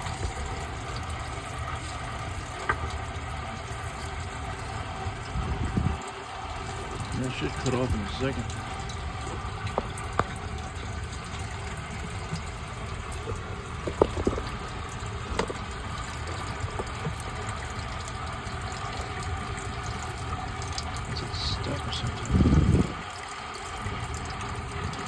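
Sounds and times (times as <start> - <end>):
electric sump pump running: 0.0 - 25.0
water rushing: 0.0 - 25.0
light clicks and knocks: 7.0 - 18.1.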